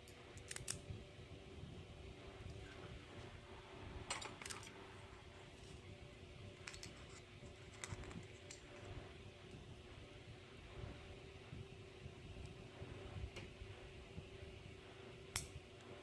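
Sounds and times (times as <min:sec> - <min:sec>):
metallic clicks of lock parts: 0:00.0 - 0:00.8, 0:04.1 - 0:04.8.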